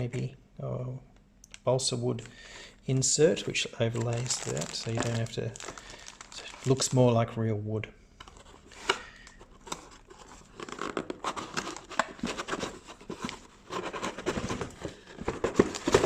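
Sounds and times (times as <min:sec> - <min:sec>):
plastic packaging crinkling: 0:03.0 - 0:07.1, 0:08.3 - 0:16.0.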